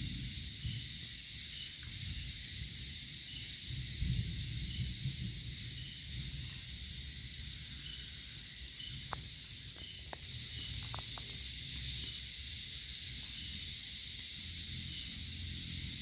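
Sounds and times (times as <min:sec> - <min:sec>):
high-pitched hiss: 0:00.0 - 0:16.0.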